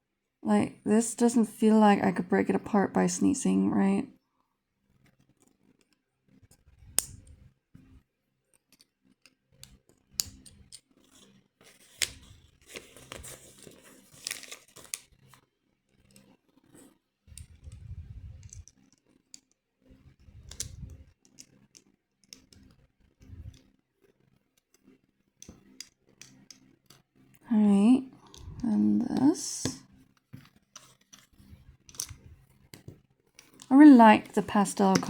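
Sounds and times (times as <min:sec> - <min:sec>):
rustling: 0:11.2 - 0:15.0.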